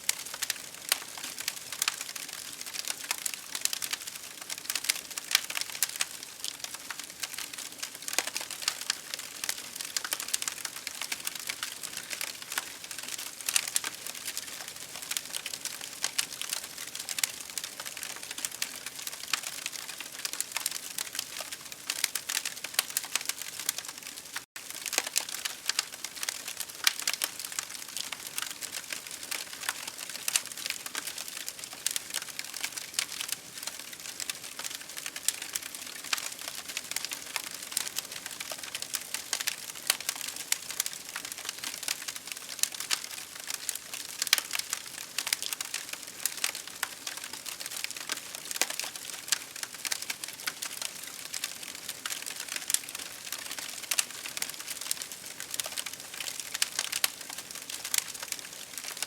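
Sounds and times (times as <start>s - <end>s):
campfire crackling and popping: 0.1s - 59.0s.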